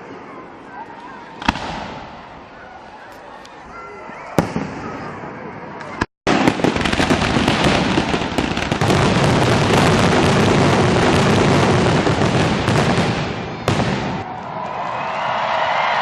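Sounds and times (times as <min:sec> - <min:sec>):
sharp firework bang: 0:01.4 - 0:02.2
fireworks bursting and crackling: 0:01.4 - 0:03.2, 0:04.4 - 0:05.3, 0:05.9 - 0:14.4.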